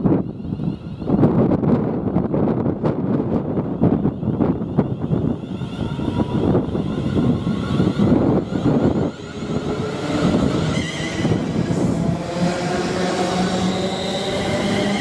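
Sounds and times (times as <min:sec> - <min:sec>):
train passing at speed: 0:04.8 - 0:15.0.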